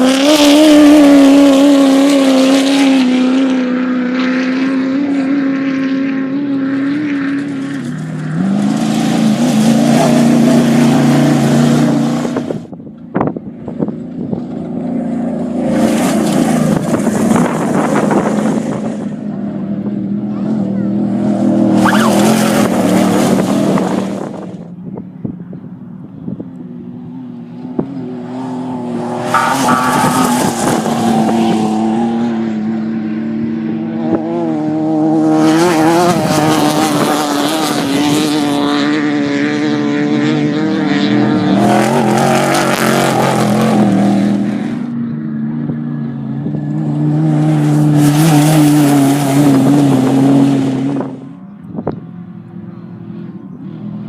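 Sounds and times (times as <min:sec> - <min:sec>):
off-road vehicles revving past: 0:00.0 - 0:25.0, 0:25.6 - 0:54.0.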